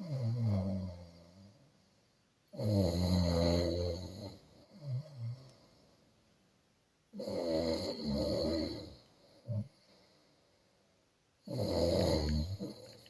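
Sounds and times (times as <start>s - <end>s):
person snoring: 2.6s - 5.5s, 7.2s - 9.8s, 11.4s - 13.0s.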